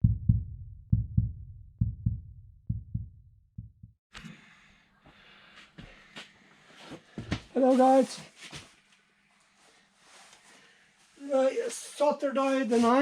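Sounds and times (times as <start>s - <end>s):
heartbeat thumps: 0.0s - 4.0s.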